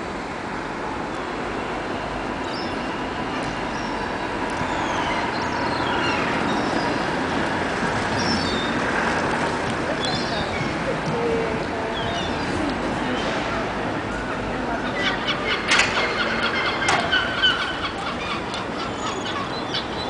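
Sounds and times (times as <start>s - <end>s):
steady rushing noise: 0.0s - 14.8s
gulls calling: 9.8s - 20.0s.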